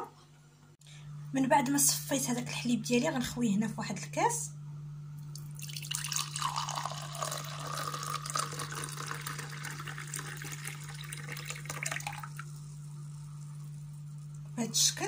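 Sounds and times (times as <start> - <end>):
milk pouring into a glass: 5.4 - 12.6.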